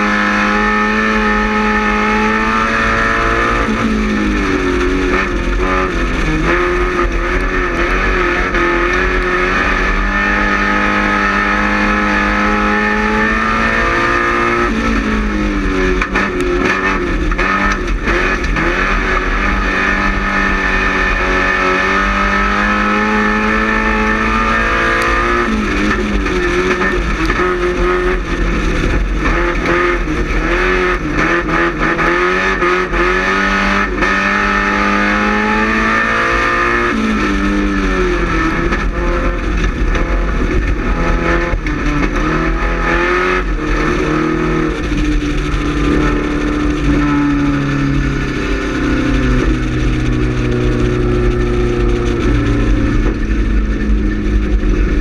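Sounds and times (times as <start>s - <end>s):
race car engine at high revs: 0.0s - 55.0s.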